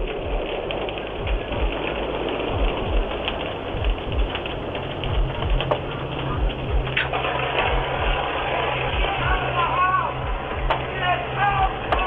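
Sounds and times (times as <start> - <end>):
fire crackling and popping: 0.0 - 12.0
low thuds: 0.0 - 12.0
steady low hum: 0.0 - 12.0.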